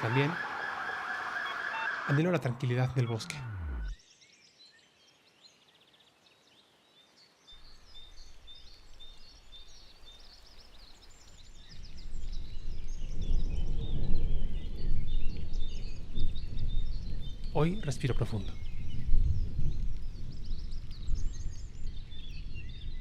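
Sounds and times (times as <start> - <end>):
low rushing noise: 0.0 - 4.0
small birds chirping and singing: 0.0 - 23.0.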